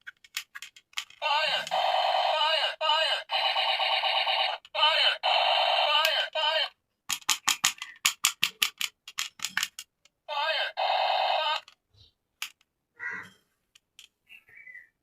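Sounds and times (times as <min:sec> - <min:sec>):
electronic toy sound effect: 0:01.2 - 0:06.7, 0:10.3 - 0:11.7
plastic clicking: 0:07.1 - 0:10.2, 0:12.4 - 0:12.7.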